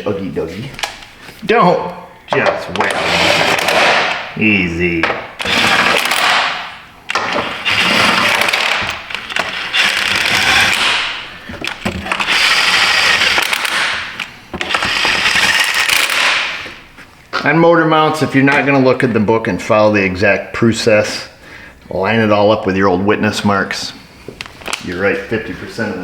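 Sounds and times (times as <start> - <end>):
impact wrench hammering: 2.4 - 4.3, 5.0 - 16.8.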